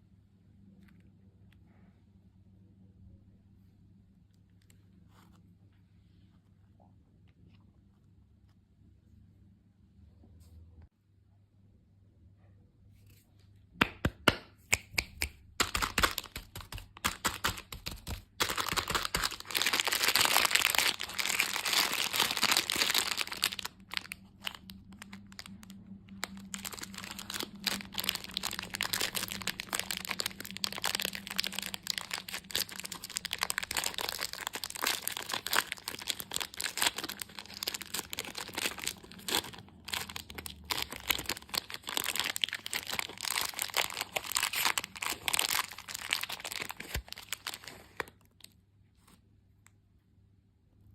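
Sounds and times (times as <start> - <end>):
candy wrappers crinkling and tearing: 15.6 - 48.6.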